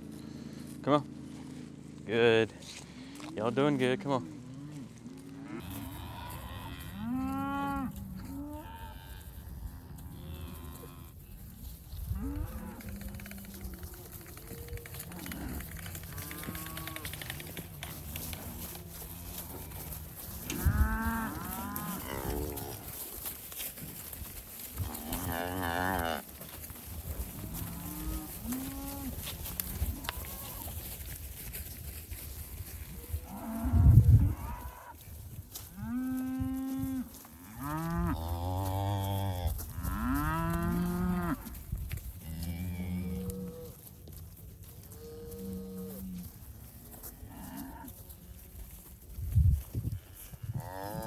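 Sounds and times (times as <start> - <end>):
cattle mooing: 4.2 - 9.4, 14.8 - 19.8, 20.4 - 22.9, 24.8 - 26.2, 35.8 - 41.6.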